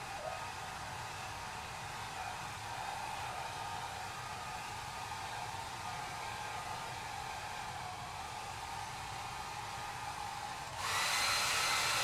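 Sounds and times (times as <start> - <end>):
hair dryer blowing: 0.0 - 12.0.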